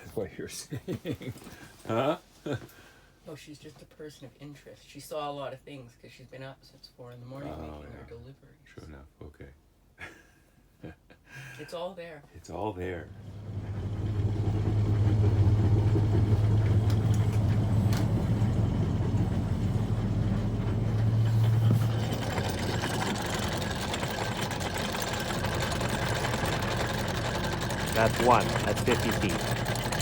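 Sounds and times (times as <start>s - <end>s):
boat engine running: 13.1s - 30.0s
anchor chain running out: 13.4s - 30.0s.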